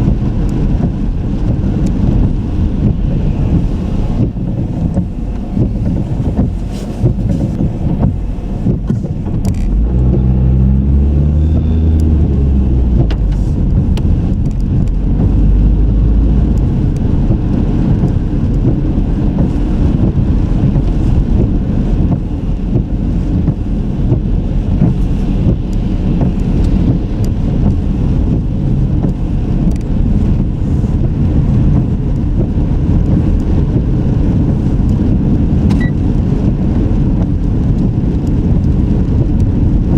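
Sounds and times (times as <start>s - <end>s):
car road and engine rumble: 0.0s - 39.9s
engine accelerating: 0.7s - 21.8s.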